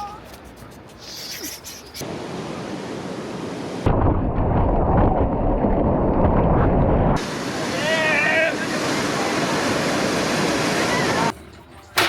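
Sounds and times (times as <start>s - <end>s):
ocean surf rushing: 2.0s - 4.0s, 7.2s - 11.3s.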